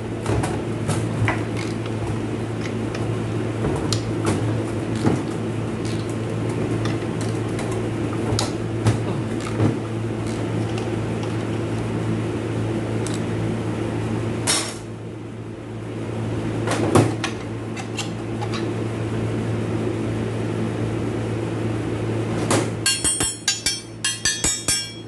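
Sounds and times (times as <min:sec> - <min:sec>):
steady low hum: 0:00.0 - 0:25.0
ringing metallic clinks: 0:22.9 - 0:25.0.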